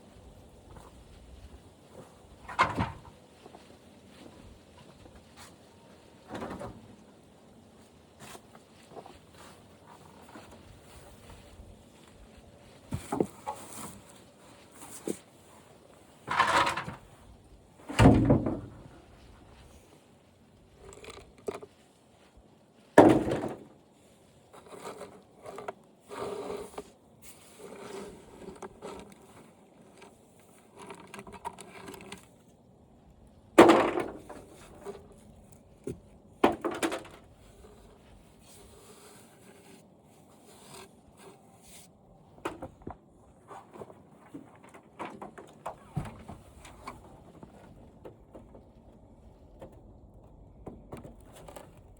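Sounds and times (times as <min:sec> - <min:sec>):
light clatter and scraping: 0:00.0 - 0:32.7, 0:33.5 - 0:51.9
loud knocks of plastic housing: 0:17.9 - 0:19.0.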